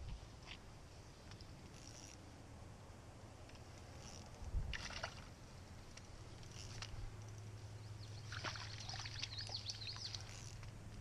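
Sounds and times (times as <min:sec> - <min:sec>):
water splashing: 0:04.7 - 0:05.3, 0:08.2 - 0:10.4.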